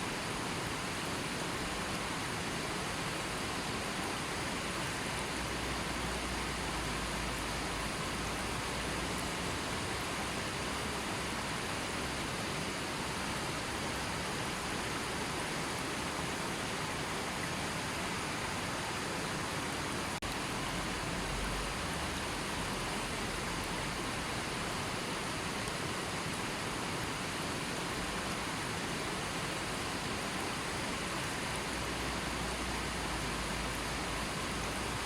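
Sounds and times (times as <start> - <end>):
river flowing: 0.0 - 35.0.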